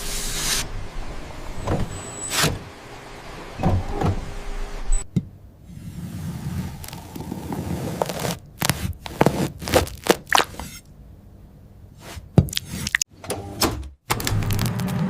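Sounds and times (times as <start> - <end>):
low hum: 0.0 - 8.5
sharp scrapes and cracks: 6.4 - 10.9, 14.2 - 15.0.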